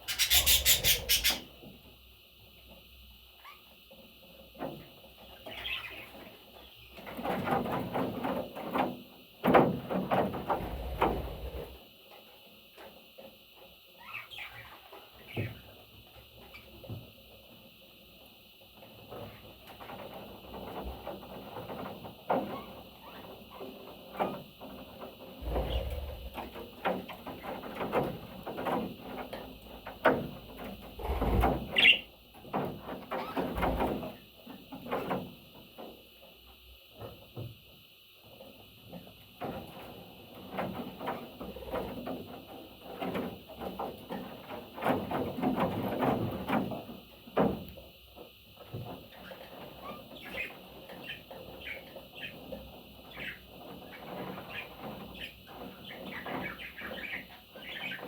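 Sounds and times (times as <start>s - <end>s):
parrot chirping: 0.0s - 1.5s.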